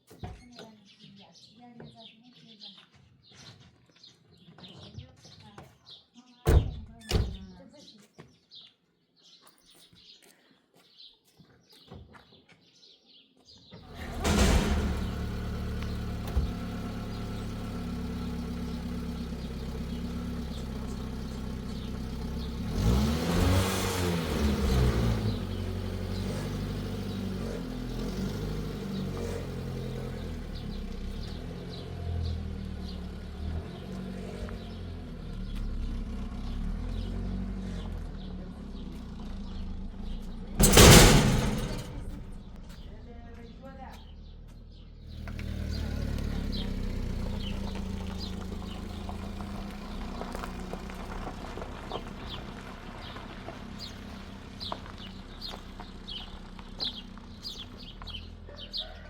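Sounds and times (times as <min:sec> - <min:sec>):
vehicle engine running and revving: 0:14.0 - 0:41.9, 0:44.4 - 0:58.8.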